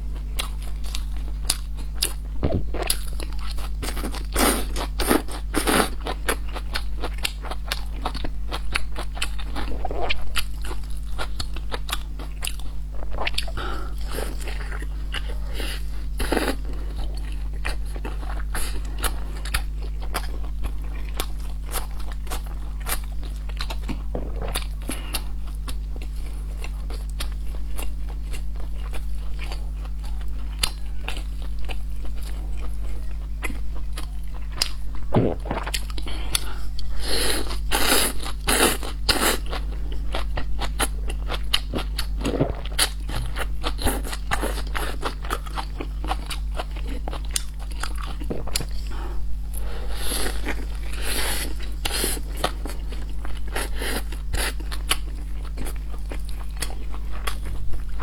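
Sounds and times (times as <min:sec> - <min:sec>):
steady low hum: 0:00.0 - 0:58.0
person biting and chewing: 0:00.4 - 0:07.8, 0:21.2 - 0:25.2, 0:33.9 - 0:36.5, 0:37.4 - 0:48.9.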